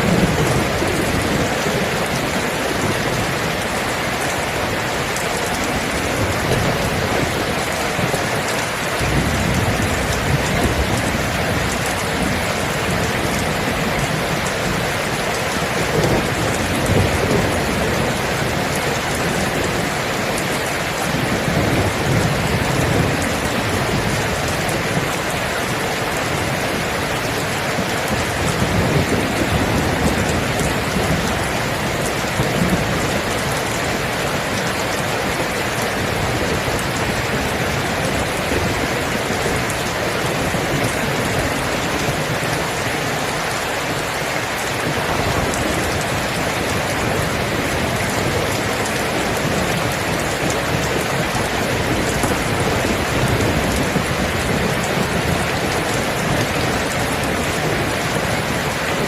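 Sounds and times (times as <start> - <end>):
heavy rain: 0.0 - 59.0
distant thunder rumbles: 9.0 - 14.5.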